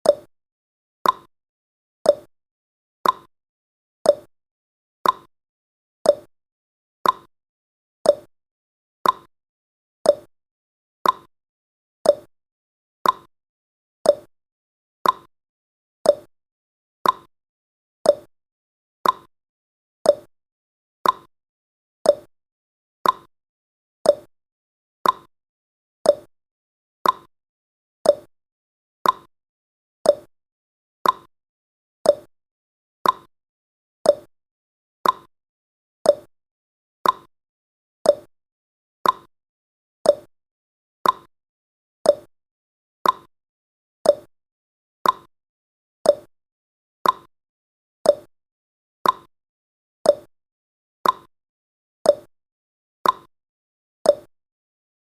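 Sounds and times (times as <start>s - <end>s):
timer tick-tock: 0.0s - 0.3s, 1.0s - 1.3s, 2.0s - 2.3s, 3.0s - 3.3s, 4.0s - 4.3s, 5.0s - 5.3s, 6.0s - 6.3s, 7.0s - 7.3s, 8.0s - 8.3s, 9.0s - 9.3s, 10.0s - 10.3s, 11.0s - 11.3s, 12.0s - 12.3s, 13.0s - 13.3s, 14.0s - 14.3s, 15.0s - 15.3s, 16.0s - 16.3s, 17.0s - 17.3s, 18.0s - 18.3s, 19.0s - 19.3s, 20.0s - 20.3s, 21.0s - 21.3s, 22.0s - 22.3s, 23.0s - 23.3s, 24.0s - 24.3s, 25.0s - 25.3s, 26.0s - 26.3s, 27.0s - 27.3s, 28.0s - 28.3s, 29.0s - 29.3s, 30.0s - 30.3s, 31.0s - 31.3s, 32.0s - 32.3s, 33.0s - 33.3s, 34.0s - 34.3s, 35.0s - 35.3s, 36.0s - 36.3s, 37.0s - 37.3s, 38.0s - 38.3s, 39.0s - 39.3s, 40.0s - 40.3s, 41.0s - 41.3s, 42.0s - 42.3s, 43.0s - 43.3s, 44.0s - 44.3s, 45.0s - 45.3s, 46.0s - 46.3s, 47.0s - 47.3s, 48.0s - 48.3s, 49.0s - 49.3s, 50.0s - 50.3s, 51.0s - 51.3s, 52.0s - 52.3s, 53.0s - 53.3s, 54.0s - 54.4s.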